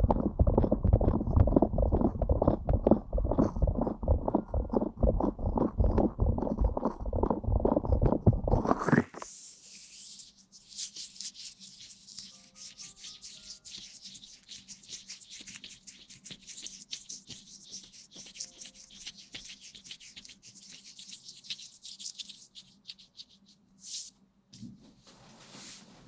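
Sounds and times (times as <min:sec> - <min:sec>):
close rustling and rubbing: 0:08.7 - 0:24.1, 0:25.0 - 0:26.0.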